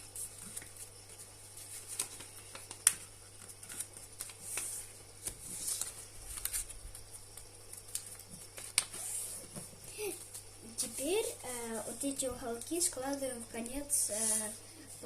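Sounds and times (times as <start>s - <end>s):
paper rustling: 0.0s - 10.5s.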